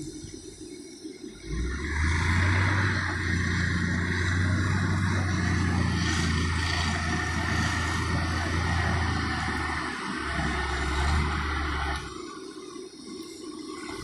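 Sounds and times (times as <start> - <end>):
wheel loader diesel engine: 1.4 - 12.4.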